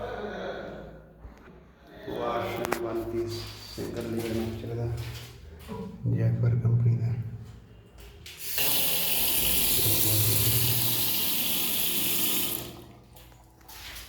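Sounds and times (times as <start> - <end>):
water gushing from tap: 8.4 - 14.0.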